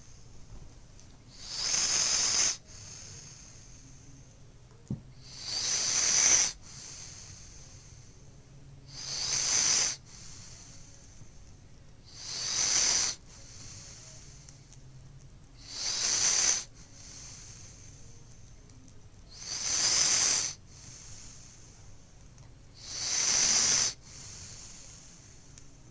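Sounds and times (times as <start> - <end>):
snoring: 1.3 - 4.1, 5.2 - 8.2, 8.9 - 11.2, 12.1 - 14.4, 15.6 - 18.1, 19.3 - 21.8, 22.8 - 25.5.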